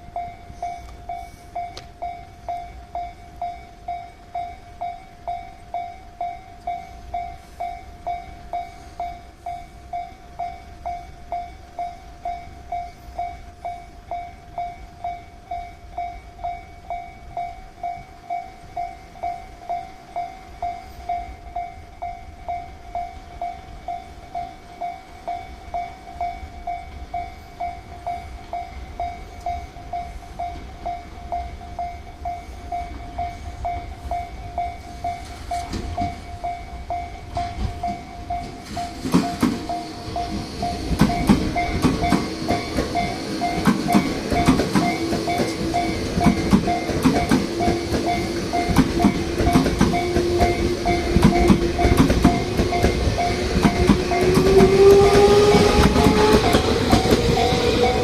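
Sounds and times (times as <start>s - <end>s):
level-crossing warning bell ringing: 0.0s - 58.0s
train wheels clattering over rails: 32.8s - 58.0s.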